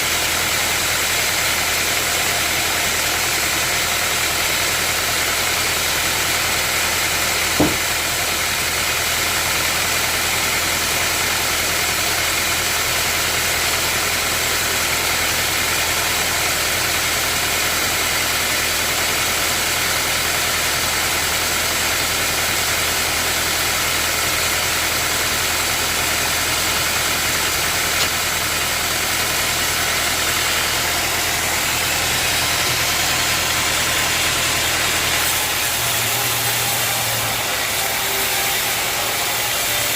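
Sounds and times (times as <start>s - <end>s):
sawmill machinery humming: 0.0s - 39.9s
sharp knock: 7.6s - 7.9s.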